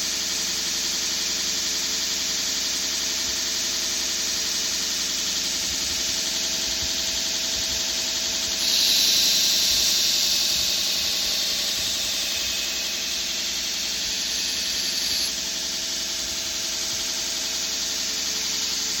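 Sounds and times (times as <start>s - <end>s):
grinding machine running: 3.5s - 19.0s
high-pitched blade grinding hiss: 4.8s - 19.0s.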